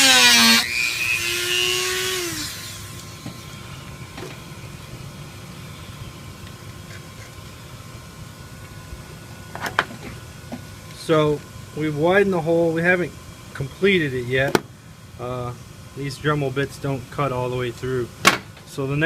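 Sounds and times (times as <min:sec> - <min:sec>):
rotary tool motor running: 0:00.0 - 0:03.8.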